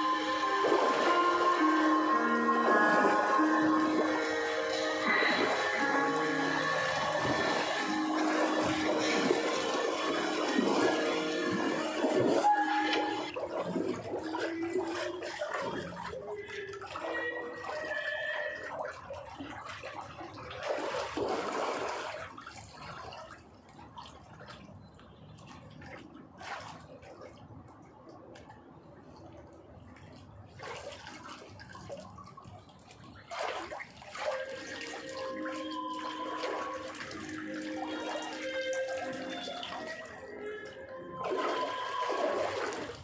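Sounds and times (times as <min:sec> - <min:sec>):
steady tones: 0:00.0 - 0:13.6
water running in surges: 0:00.0 - 0:28.9, 0:29.5 - 0:43.0.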